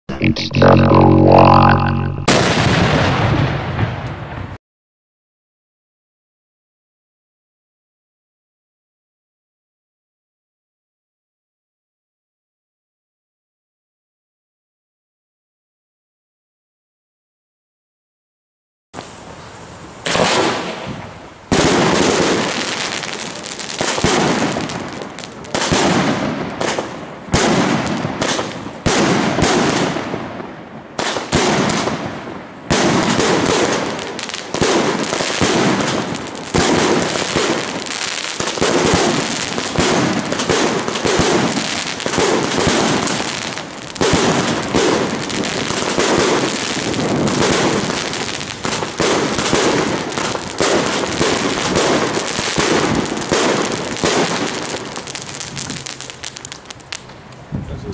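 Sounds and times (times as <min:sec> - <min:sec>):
firework cake bangs: 0:44.0 - 0:54.8.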